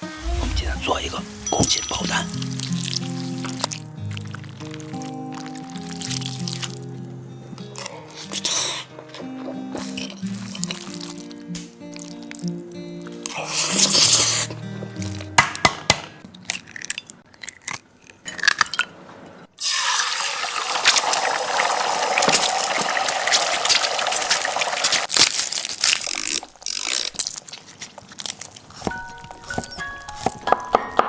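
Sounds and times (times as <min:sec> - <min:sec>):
food sizzling in hot oil: 0:00.9 - 0:06.8, 0:19.6 - 0:25.2.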